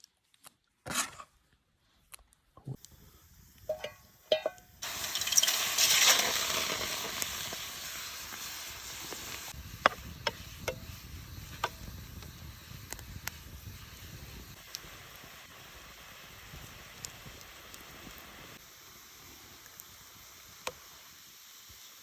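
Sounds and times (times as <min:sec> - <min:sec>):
pops and crackles: 0:02.7 - 0:18.6
food sizzling in a hot pan: 0:03.1 - 0:22.0.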